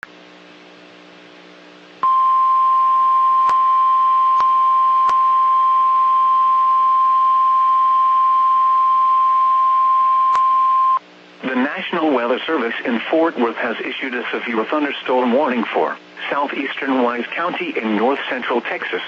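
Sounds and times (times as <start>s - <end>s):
loud steady alarm beep: 2.0s - 11.0s.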